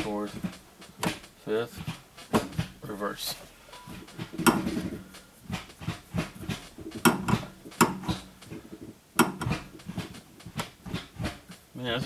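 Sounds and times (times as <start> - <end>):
gear lever clicks and clunks: 3.8 - 11.6.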